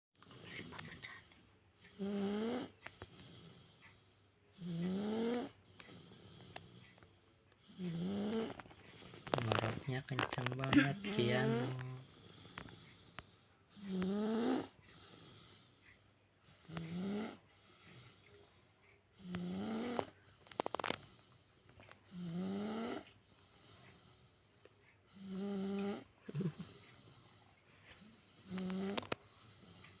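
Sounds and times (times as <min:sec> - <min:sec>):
quiet breathing: 0:00.2 - 0:30.0
baby snoring loudly: 0:01.9 - 0:02.7, 0:04.6 - 0:05.6, 0:07.7 - 0:08.6, 0:13.8 - 0:14.8, 0:16.6 - 0:17.4, 0:19.2 - 0:20.1.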